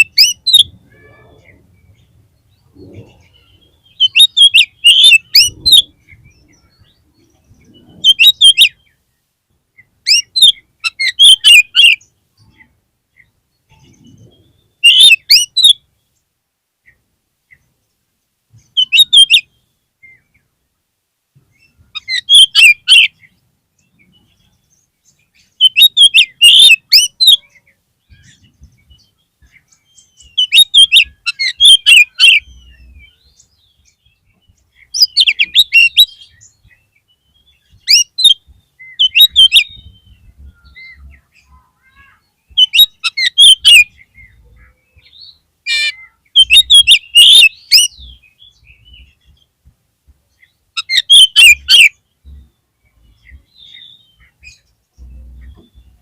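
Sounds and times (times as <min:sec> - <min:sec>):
songbird singing high notes: 0:00.0 - 0:09.0, 0:13.2 - 0:15.9, 0:18.6 - 0:20.4, 0:23.9 - 0:49.2, 0:50.8 - 0:56.0.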